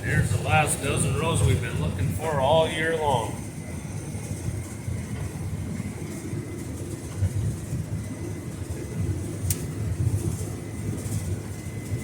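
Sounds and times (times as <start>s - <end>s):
combine engine rumble: 0.0s - 12.0s
faint steady whine: 0.0s - 12.0s.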